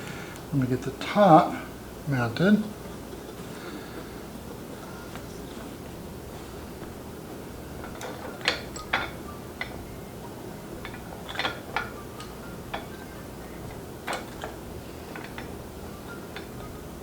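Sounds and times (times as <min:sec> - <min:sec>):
low steady hum: 0:00.0 - 0:17.0
metal parts clicking and tapping: 0:07.8 - 0:10.0, 0:10.8 - 0:17.0.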